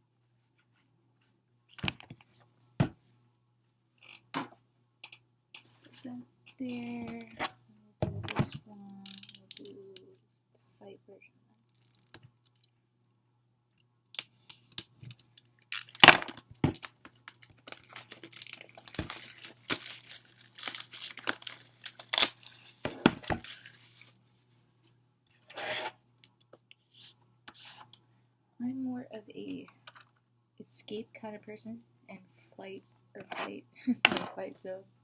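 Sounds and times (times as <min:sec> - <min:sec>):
plastic shrink-wrap crinkling: 0:15.7 - 0:24.2.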